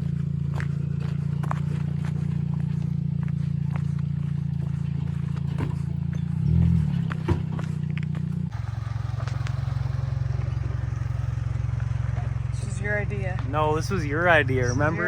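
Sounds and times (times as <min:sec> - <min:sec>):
car engine running: 0:00.0 - 0:15.0
gravel clattering under tyres: 0:00.0 - 0:15.0.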